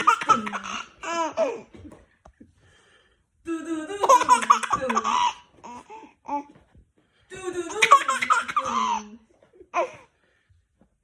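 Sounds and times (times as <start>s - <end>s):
baby laughing: 0.0s - 1.7s, 3.9s - 6.5s, 7.6s - 9.1s.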